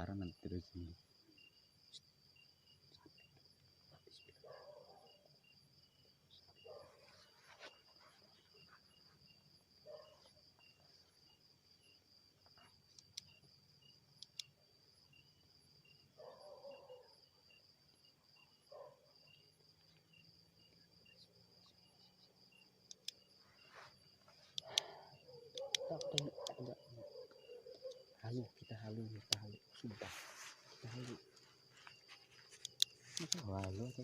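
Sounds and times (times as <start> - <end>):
insects chirring: 0.0 - 34.0
sharp clicks: 25.5 - 26.8, 32.5 - 33.8.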